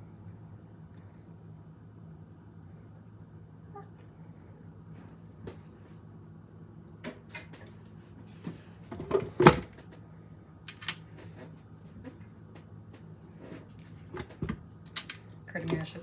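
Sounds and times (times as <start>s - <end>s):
faint low hum: 0.0s - 16.0s
kitchen knocks and clunks: 8.9s - 9.7s.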